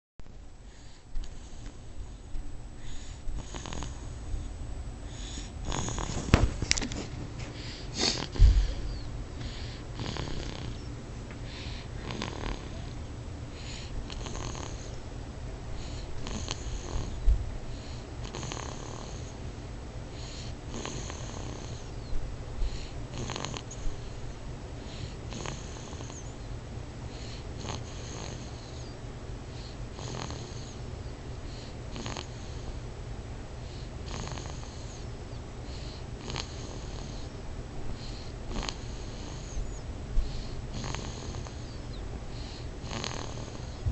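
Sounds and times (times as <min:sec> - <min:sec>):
loud snoring: 0:03.4 - 0:04.2, 0:05.2 - 0:06.3, 0:08.0 - 0:10.9, 0:11.6 - 0:13.0, 0:13.7 - 0:15.0, 0:15.9 - 0:17.2, 0:17.8 - 0:19.4, 0:20.2 - 0:22.0, 0:23.1 - 0:23.8, 0:25.3 - 0:26.3, 0:27.2 - 0:28.8, 0:29.6 - 0:30.8, 0:31.9 - 0:32.7, 0:33.7 - 0:35.0, 0:35.7 - 0:37.3, 0:38.0 - 0:39.6, 0:40.3 - 0:41.8, 0:42.4 - 0:43.8.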